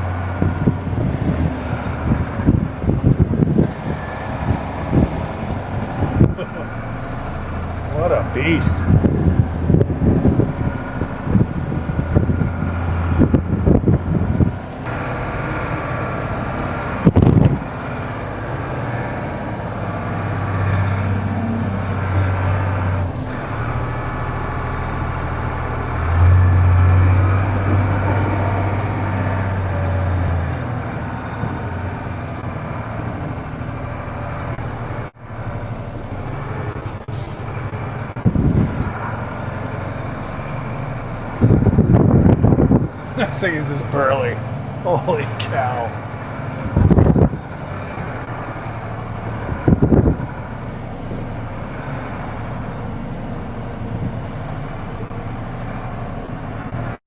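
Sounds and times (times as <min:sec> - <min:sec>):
diesel truck engine under load: 0:00.0 - 0:57.0
rumbling knocks: 0:24.8 - 0:30.4.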